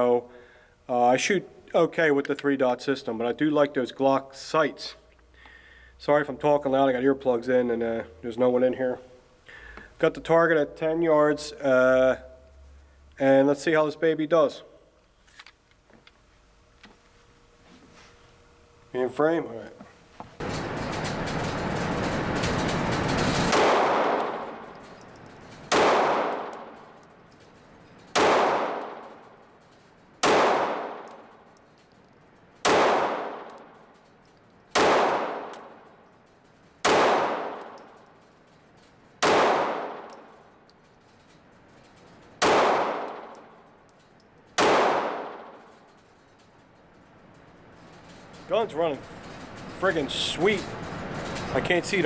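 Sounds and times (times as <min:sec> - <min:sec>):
pistol shots with echo: 0:23.5 - 0:24.7, 0:25.7 - 0:26.8, 0:28.1 - 0:29.3, 0:30.2 - 0:31.4, 0:32.6 - 0:33.7, 0:34.7 - 0:35.9, 0:36.8 - 0:37.8, 0:39.2 - 0:40.3, 0:42.4 - 0:43.6, 0:44.6 - 0:45.6.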